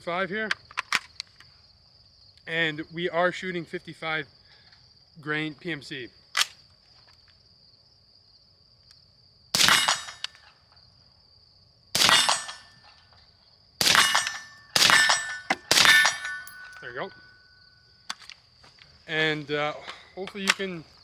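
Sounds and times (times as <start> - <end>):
crickets chirring: 0.0 - 21.0
suppressed rifle shots: 9.6 - 10.4, 12.0 - 12.8, 13.8 - 17.3.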